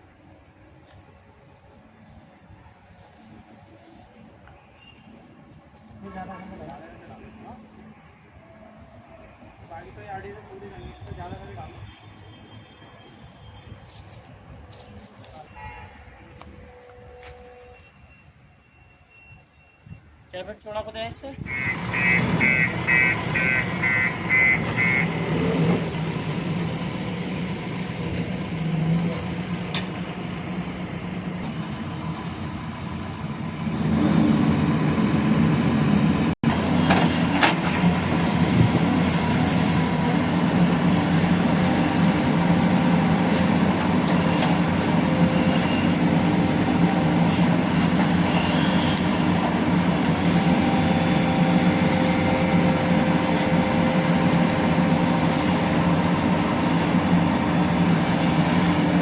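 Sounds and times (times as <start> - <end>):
diesel engine running: 21.5 - 59.0.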